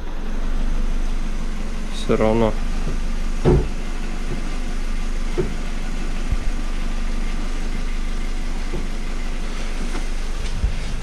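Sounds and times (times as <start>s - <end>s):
car engine idling: 0.0s - 11.0s
gearbox knock thump: 2.9s - 4.5s, 5.3s - 5.6s.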